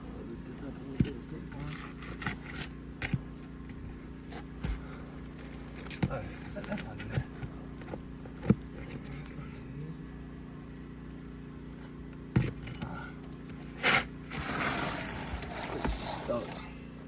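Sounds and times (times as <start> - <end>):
steady low hum: 0.0 - 17.0
hand tool scraping shingle: 0.9 - 9.4, 12.4 - 16.9.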